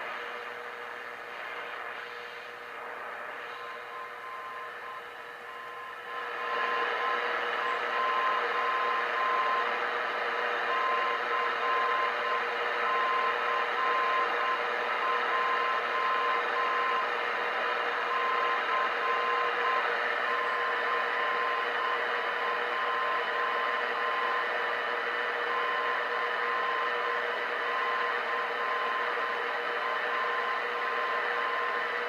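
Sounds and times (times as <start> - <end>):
radio static: 0.0 - 13.2.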